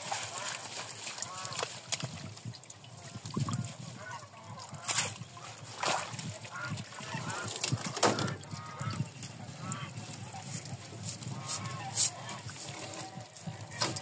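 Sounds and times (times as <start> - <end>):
sharp knocks or splashes: 0.0 - 2.7, 4.6 - 9.8, 13.7 - 14.0
waterfowl honking: 0.3 - 1.6, 3.0 - 10.6, 11.2 - 14.0.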